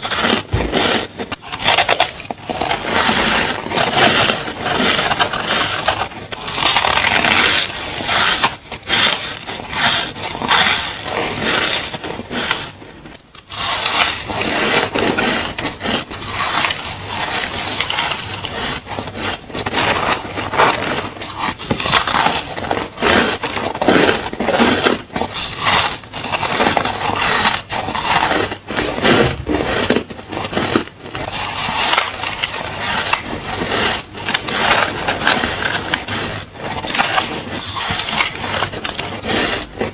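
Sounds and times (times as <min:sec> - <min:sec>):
person crunching ice cubes: 0:00.0 - 0:39.9.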